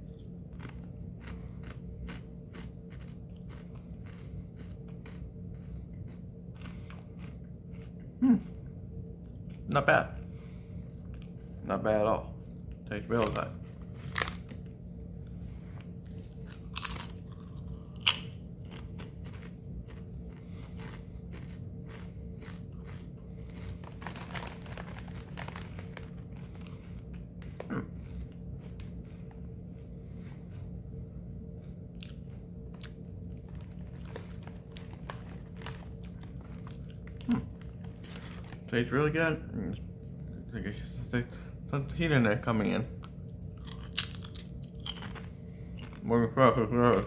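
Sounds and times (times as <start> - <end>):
person chewing crunchy chips: 0.0 - 8.6, 13.1 - 30.8, 31.6 - 38.7, 43.0 - 47.0.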